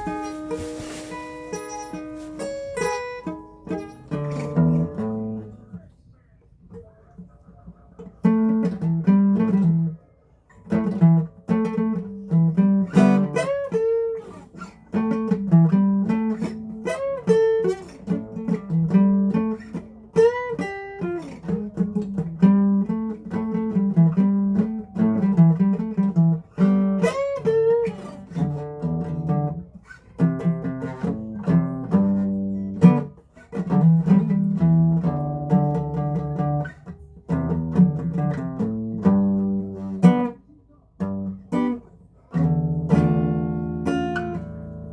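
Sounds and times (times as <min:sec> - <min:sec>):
acoustic guitar strumming: 0:00.0 - 0:44.9.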